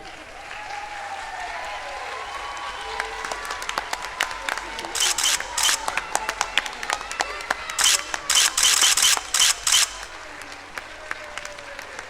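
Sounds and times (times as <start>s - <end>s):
light scattered clapping: 0.0s - 12.0s
camera shutter clicks: 5.0s - 6.0s, 7.8s - 10.2s.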